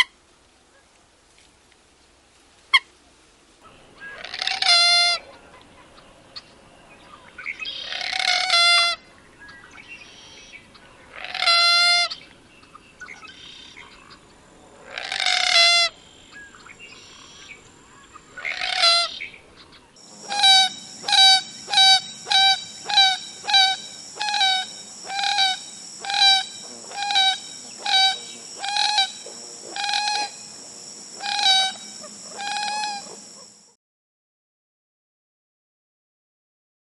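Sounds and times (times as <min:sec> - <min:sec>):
gallinule clucking calls: 0:20.1 - 0:33.7.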